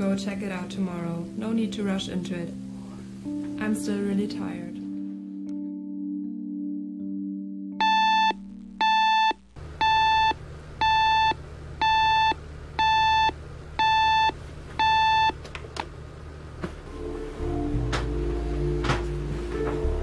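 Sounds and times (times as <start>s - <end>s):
alarm clock beeping: 7.8s - 15.4s.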